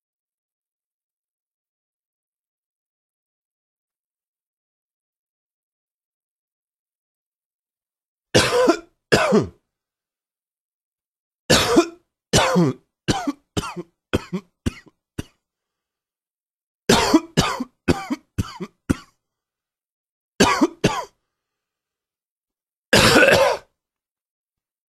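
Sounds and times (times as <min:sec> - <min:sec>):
person coughing: 0:08.4 - 0:09.6, 0:11.5 - 0:15.4, 0:16.9 - 0:19.2, 0:20.4 - 0:21.2, 0:22.9 - 0:23.7.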